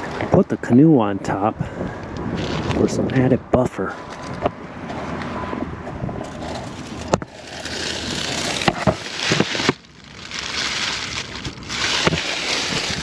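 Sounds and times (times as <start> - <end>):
camera rustling and scraping: 2.3 - 2.9, 6.1 - 13.0.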